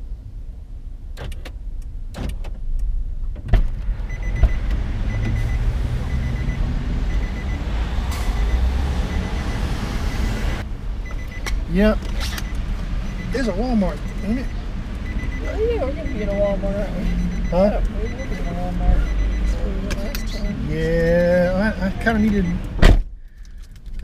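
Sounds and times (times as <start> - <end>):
vehicle engine rumble: 0.0 - 24.0
faint high beep: 4.1 - 11.5, 12.4 - 22.6.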